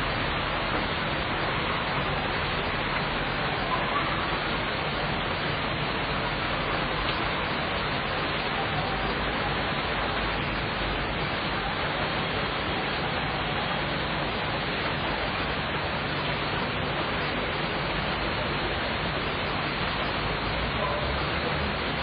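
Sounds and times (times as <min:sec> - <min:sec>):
steady rain falling: 0:00.0 - 0:22.0.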